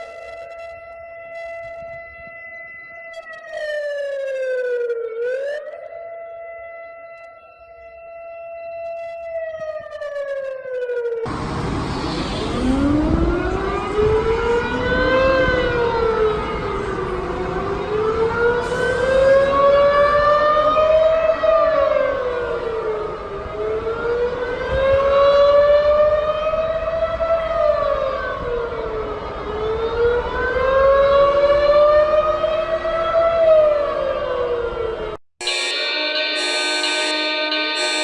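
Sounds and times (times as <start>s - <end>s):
warning siren wailing: 0.0s - 38.0s.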